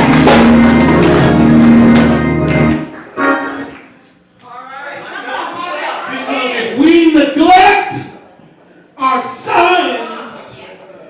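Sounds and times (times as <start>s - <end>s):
church organ chords: 0.0s - 4.0s.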